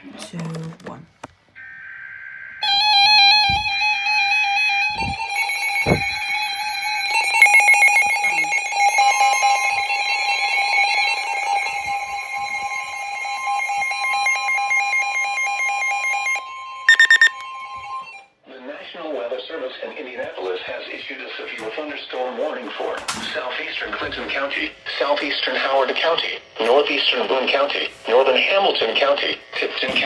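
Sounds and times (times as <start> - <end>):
higher steady tone: 1.6 - 18.2
electronic alert tone: 2.6 - 17.4
low thumps: 3.3 - 4.0, 4.8 - 6.4.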